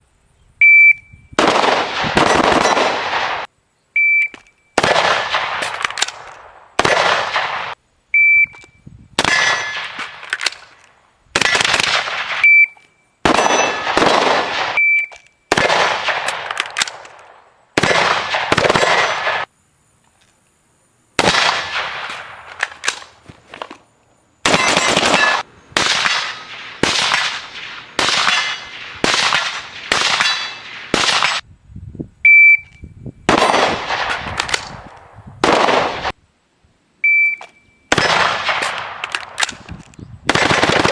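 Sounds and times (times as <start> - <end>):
short high beep: 0.6 - 1.3, 4.0 - 4.8, 8.2 - 8.8, 12.4 - 12.8, 14.8 - 15.2, 32.3 - 32.9, 37.0 - 37.9
rifle shots echoing: 1.4 - 3.5, 4.8 - 7.8, 9.2 - 10.7, 11.4 - 12.5, 13.2 - 14.8, 15.5 - 19.5, 21.2 - 23.2, 24.4 - 31.4, 33.3 - 36.2, 37.9 - 39.6, 40.3 - 40.9.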